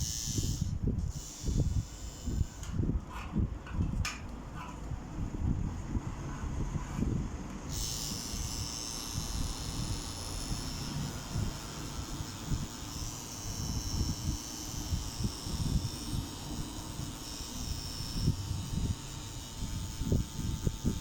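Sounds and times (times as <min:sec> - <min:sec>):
tattoo machine whining: 0:00.0 - 0:03.3, 0:07.6 - 0:21.0.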